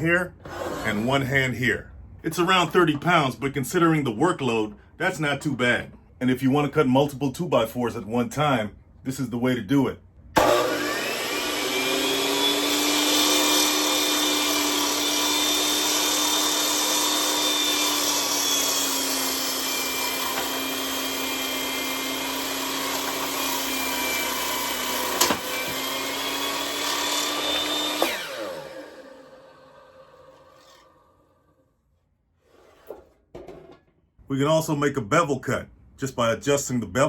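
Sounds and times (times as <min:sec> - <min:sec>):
motor winding down: 0:10.4 - 0:30.5
saw motor whining: 0:10.4 - 0:31.3.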